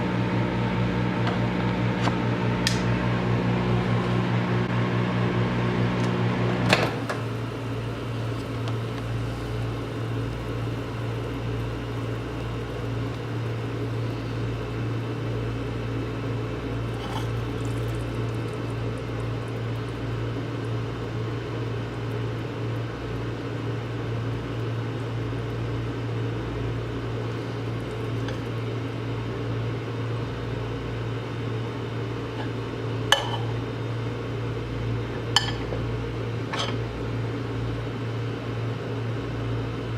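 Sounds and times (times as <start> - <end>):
microwave oven humming: 0.0 - 39.9
microwave clicks: 1.2 - 3.0.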